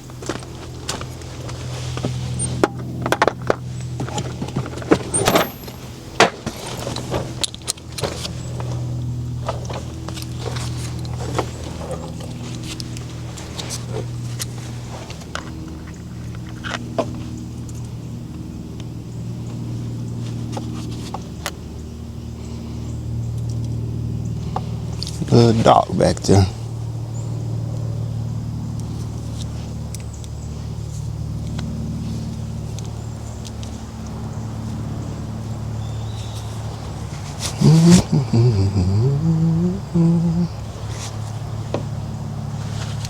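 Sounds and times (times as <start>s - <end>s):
engine idling: 0.0s - 43.0s
metallic clinks of tools: 5.1s - 5.9s.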